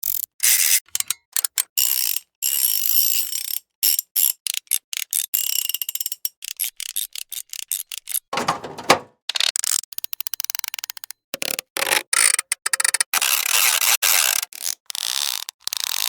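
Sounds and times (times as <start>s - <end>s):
mechanical clatters and clicks: 8.4s - 9.1s.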